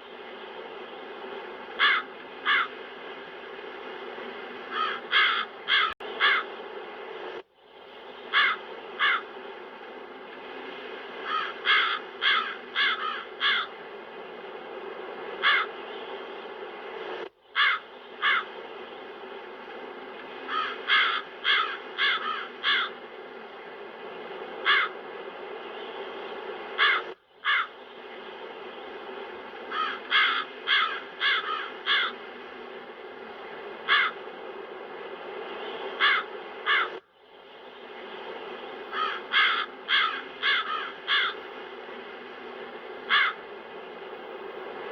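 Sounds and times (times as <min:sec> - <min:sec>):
crows cawing: 0:01.8 - 0:02.8, 0:04.7 - 0:06.5, 0:08.3 - 0:09.3, 0:11.2 - 0:13.8, 0:15.4 - 0:15.8, 0:17.6 - 0:18.5, 0:20.5 - 0:23.0, 0:24.6 - 0:25.0, 0:26.8 - 0:27.8, 0:29.7 - 0:32.2, 0:33.8 - 0:34.2, 0:36.0 - 0:37.0, 0:38.9 - 0:41.4, 0:43.1 - 0:43.4.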